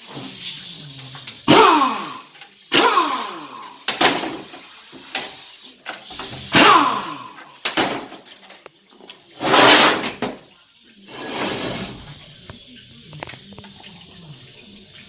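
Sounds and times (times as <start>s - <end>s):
metal parts clanking and knocking: 3.9s - 6.6s, 7.6s - 10.4s.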